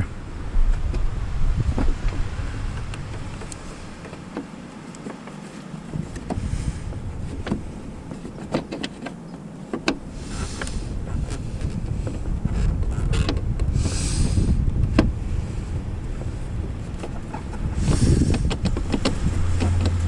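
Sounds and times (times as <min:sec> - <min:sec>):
hand tools clicking and knocking: 0:07.2 - 0:13.7, 0:16.9 - 0:20.0
brief scraping rustles: 0:10.1 - 0:12.8.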